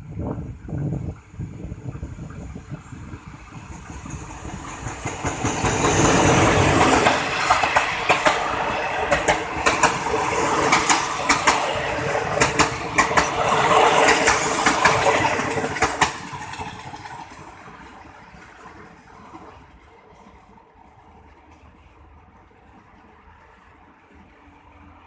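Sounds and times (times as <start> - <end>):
passenger train rolling past: 0.0 - 25.0
train wheels clacking over rail joints: 3.6 - 19.5.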